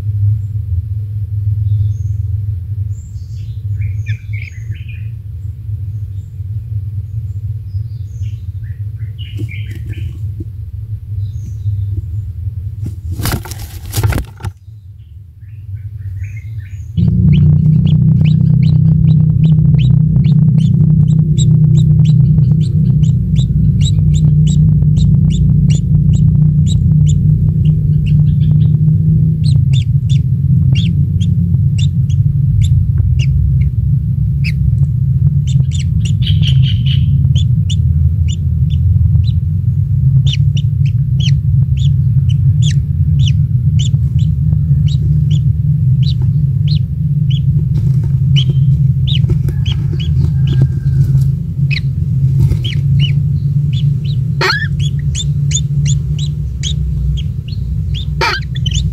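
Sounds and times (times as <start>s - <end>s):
loud steady low hum: 0.0s - 58.9s
kingfisher chirping: 8.2s - 10.3s, 16.0s - 33.8s, 35.4s - 39.4s, 40.1s - 58.9s.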